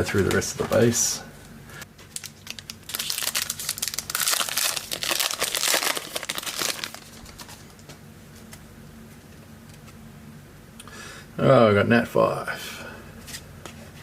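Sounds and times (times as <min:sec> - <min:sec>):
plastic wrapper tearing and crinkling: 0:02.1 - 0:07.7.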